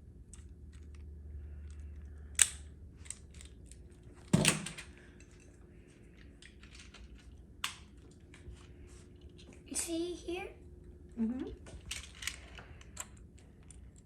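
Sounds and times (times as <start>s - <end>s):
plastic toy parts clicking: 0.3s - 3.9s.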